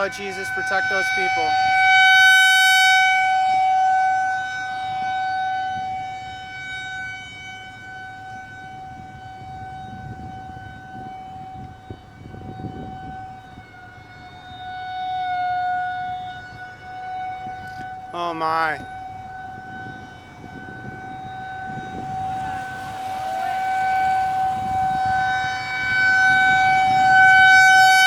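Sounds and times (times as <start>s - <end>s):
warning siren steady tone: 0.0s - 28.0s.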